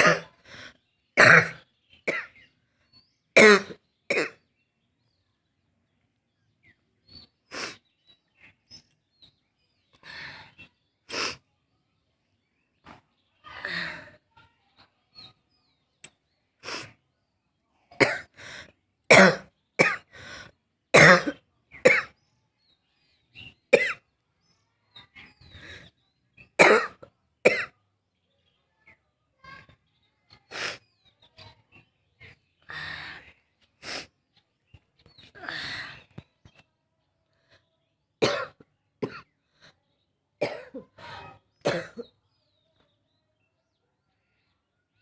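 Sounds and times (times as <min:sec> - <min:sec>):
person clearing throat: 0:00.0 - 0:00.3, 0:01.2 - 0:02.3, 0:21.0 - 0:22.1, 0:41.6 - 0:42.1
person coughing: 0:00.0 - 0:00.3, 0:41.6 - 0:42.1.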